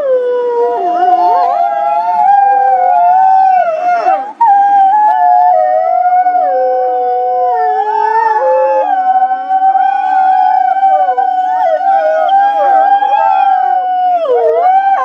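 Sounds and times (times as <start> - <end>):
wolves howling: 0.0 - 15.0.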